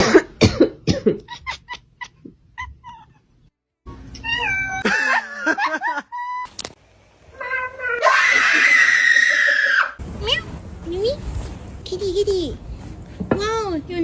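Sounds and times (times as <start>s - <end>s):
cat meowing: 4.2s - 4.8s, 7.4s - 8.4s.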